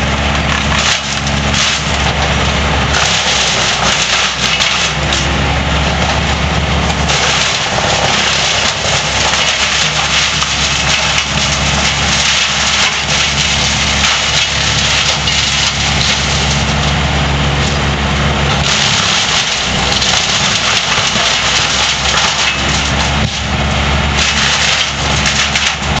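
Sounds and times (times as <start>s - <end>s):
heavy machinery engine running: 0.0s - 26.0s.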